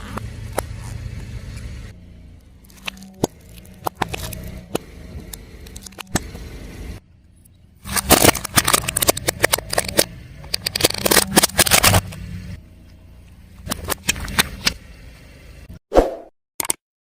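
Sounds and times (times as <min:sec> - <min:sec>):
low steady car sound: 0:00.0 - 0:15.8
tyre crushing brittle objects: 0:02.6 - 0:06.3, 0:07.8 - 0:12.2.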